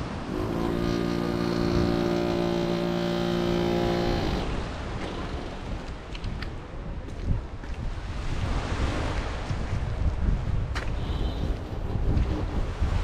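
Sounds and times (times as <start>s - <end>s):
motor engine running: 0.0s - 5.9s
wind: 0.0s - 13.0s.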